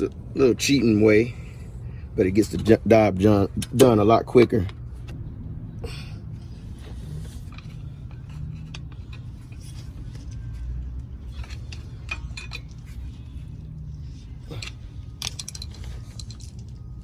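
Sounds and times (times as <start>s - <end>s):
low rumble of road traffic: 0.0s - 17.0s
hand tools clicking and tapping: 14.4s - 16.5s.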